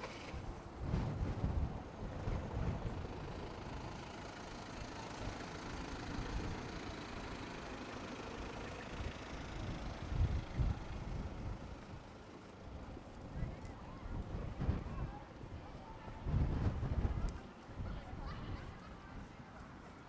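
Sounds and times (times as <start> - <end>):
vehicle engine running: 0.0 - 14.9.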